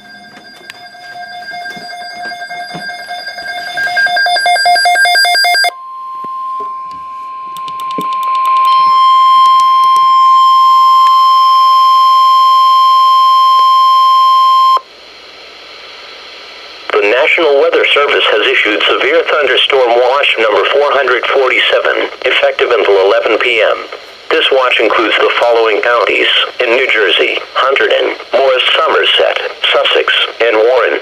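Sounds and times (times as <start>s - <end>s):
rapid alarm beeps: 0.0s - 14.8s
steady warning tone: 0.0s - 14.8s.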